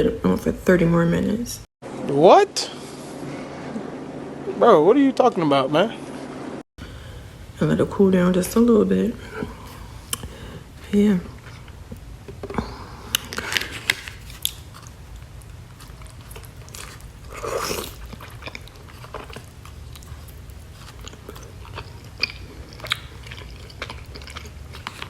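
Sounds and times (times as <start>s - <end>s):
person chewing food: 11.4s - 25.0s.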